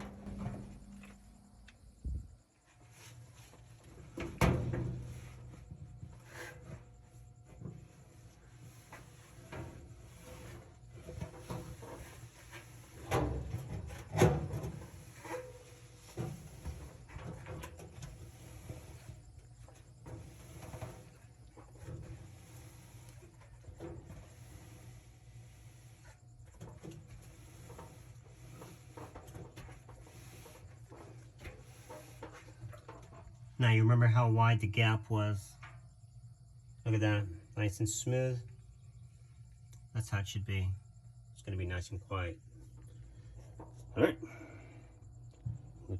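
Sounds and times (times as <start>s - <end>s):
knocks and rubbing of parts: 0.0s - 33.6s
low steady hum: 0.0s - 45.9s.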